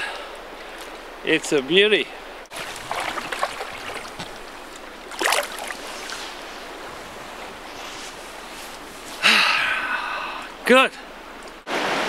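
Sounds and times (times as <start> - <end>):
river water rushing: 2.1 - 9.5.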